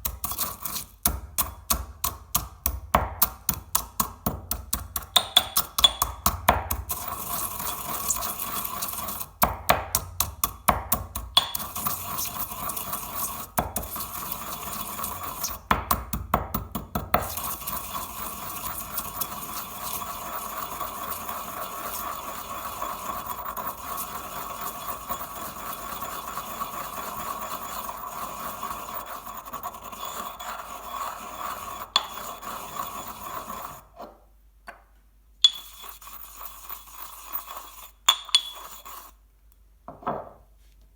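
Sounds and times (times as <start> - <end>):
scraping and grinding: 17.3 - 34.1.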